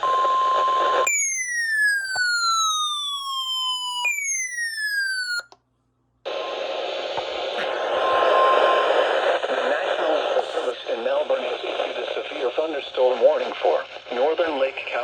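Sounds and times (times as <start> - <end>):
electronic siren tone: 0.1 - 5.5
alert tone: 1.1 - 5.5
radio static hiss: 6.3 - 15.0.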